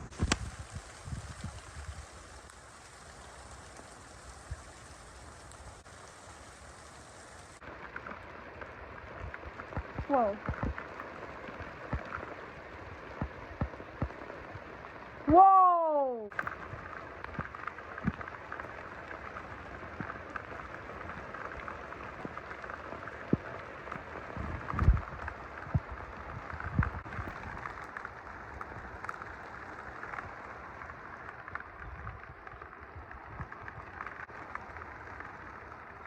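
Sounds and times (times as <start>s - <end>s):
heavy rain falling: 0.0s - 36.0s
raindrops ticking: 0.0s - 36.0s.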